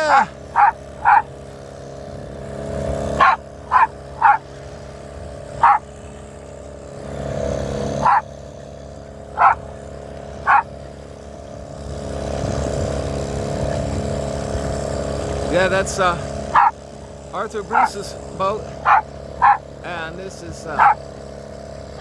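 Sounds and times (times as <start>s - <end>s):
dog barking: 0.5s - 1.3s, 3.2s - 4.4s, 5.6s - 5.8s, 8.0s - 8.3s, 9.4s - 9.7s, 10.4s - 10.7s, 16.5s - 16.8s, 17.7s - 18.0s, 18.8s - 19.6s, 20.8s - 21.0s.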